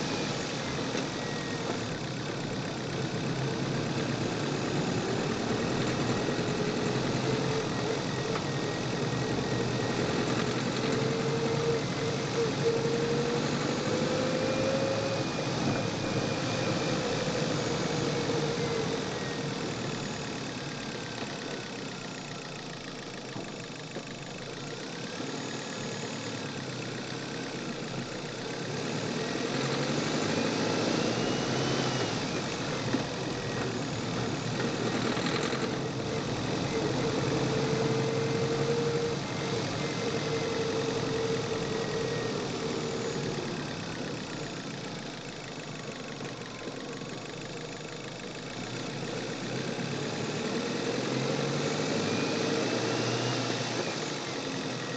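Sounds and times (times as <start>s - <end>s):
engine knocking: 0.0s - 14.6s, 15.2s - 54.9s
car engine revving: 0.0s - 21.1s, 28.4s - 44.6s, 48.6s - 54.9s.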